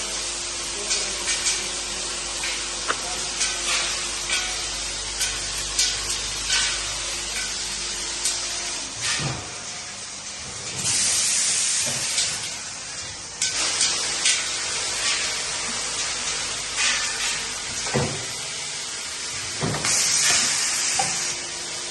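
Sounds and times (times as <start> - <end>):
bagging machine running: 0.0 - 21.9
compressed air hiss: 19.6 - 21.4.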